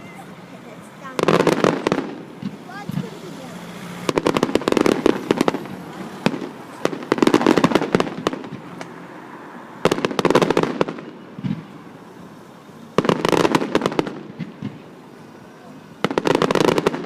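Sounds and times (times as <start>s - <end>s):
firework crack: 0.0s - 17.0s
fireworks crackling bangs: 0.0s - 17.0s.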